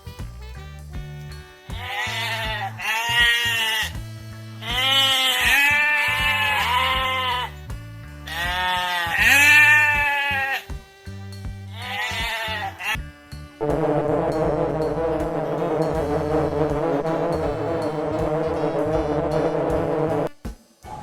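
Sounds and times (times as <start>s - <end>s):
music with repeating bass line: 0.0s - 20.5s
sheep bleating: 1.7s - 3.9s, 4.6s - 7.5s, 8.3s - 10.7s, 11.7s - 13.7s.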